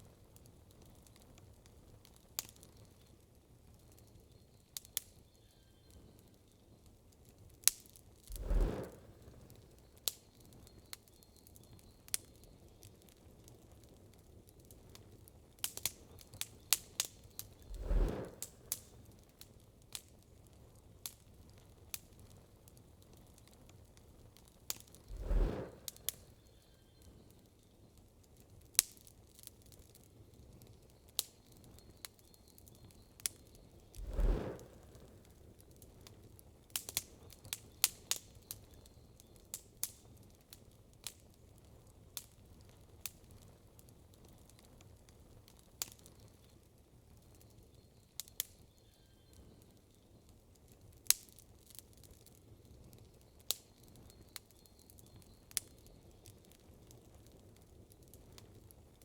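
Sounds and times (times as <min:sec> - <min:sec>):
campfire crackling and popping: 0:05.9 - 0:26.4, 0:27.2 - 0:47.6, 0:49.6 - 0:59.0
low rushing swells: 0:08.3 - 0:09.2, 0:17.7 - 0:18.5, 0:25.1 - 0:26.1, 0:34.0 - 0:35.1.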